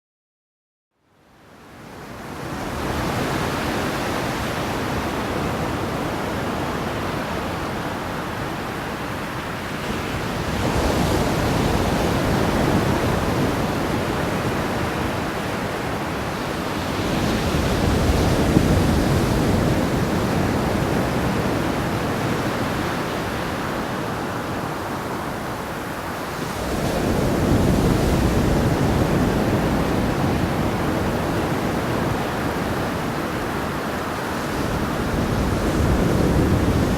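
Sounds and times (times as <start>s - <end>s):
waves washing in and back: 1.2s - 36.9s.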